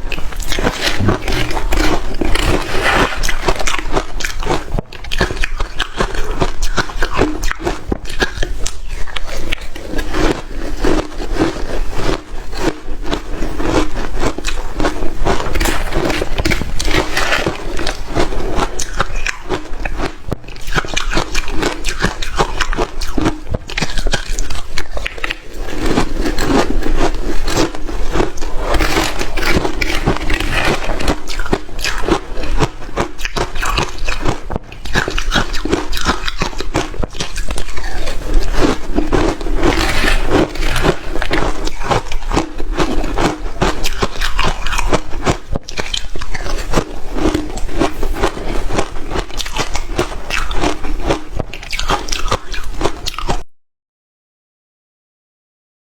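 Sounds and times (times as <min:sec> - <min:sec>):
chewing crunchy ice: 0:00.0 - 0:53.5.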